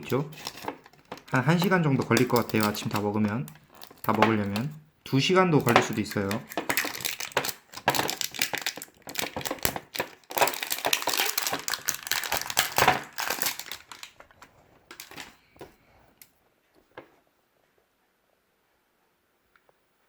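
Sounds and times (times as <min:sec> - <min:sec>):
plastic packaging crinkling: 0:00.0 - 0:15.7.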